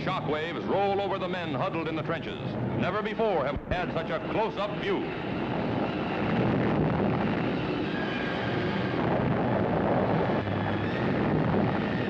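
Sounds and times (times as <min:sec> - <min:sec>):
explosion rumble: 0:05.4 - 0:12.0.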